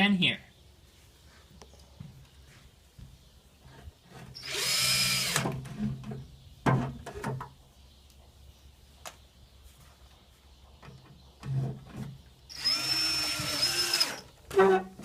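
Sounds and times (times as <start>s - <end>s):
screw gun motor whine: 4.4s - 5.4s, 12.5s - 14.3s.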